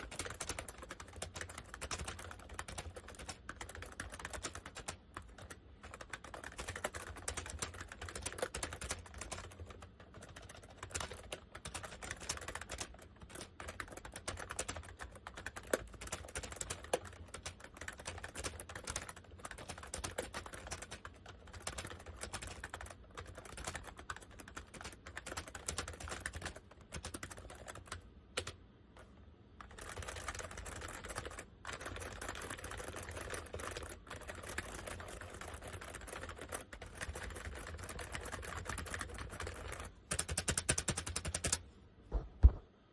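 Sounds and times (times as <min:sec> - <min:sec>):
steady low hum: 0:41.6 - 0:42.9.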